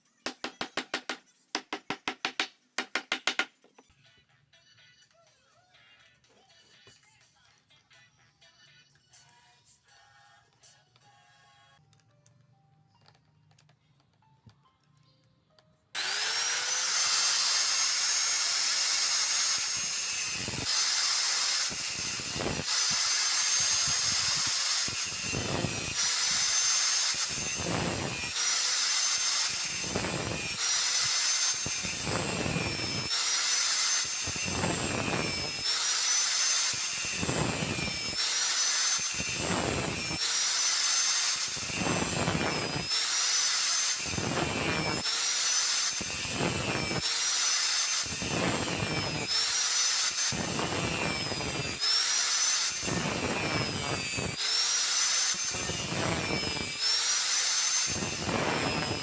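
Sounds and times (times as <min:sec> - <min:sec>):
electric drill whining: 0:15.9 - 0:59.0
tool grinding against wood: 0:16.0 - 0:59.0.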